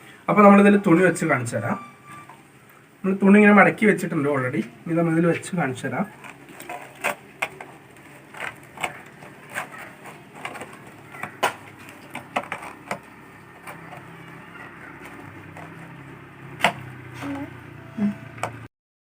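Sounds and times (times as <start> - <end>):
plastic bottle clicks and crinkles: 6.2 - 14.4.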